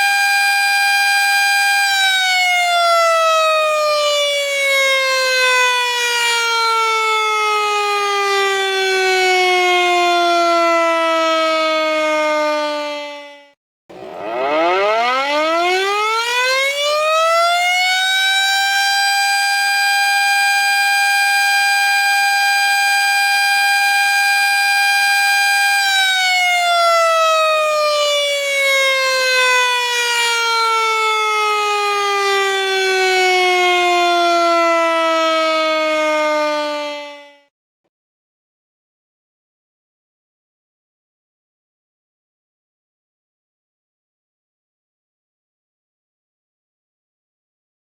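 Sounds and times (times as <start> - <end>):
warning siren winding: 13.9 - 37.3.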